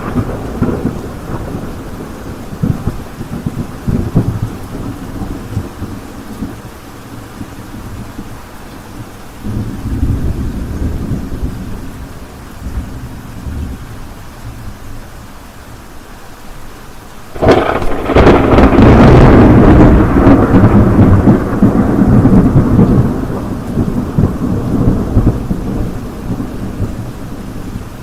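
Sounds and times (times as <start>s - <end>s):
thunder crack and rumble: 0.0s - 6.7s, 9.4s - 14.0s, 17.4s - 28.0s
rain falling: 0.0s - 28.0s.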